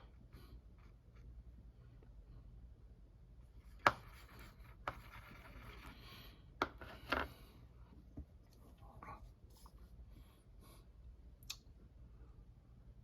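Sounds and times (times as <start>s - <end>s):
light rubbing and scraping: 3.6s - 7.6s.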